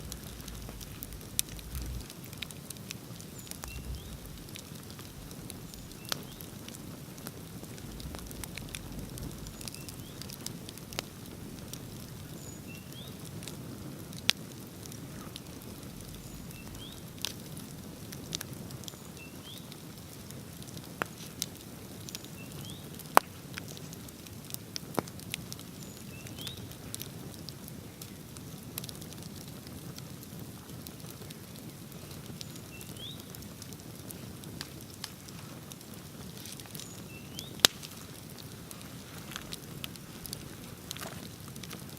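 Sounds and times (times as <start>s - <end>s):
bonfire flame rushing: 0.0s - 41.9s
fire crackling and popping: 0.0s - 41.9s.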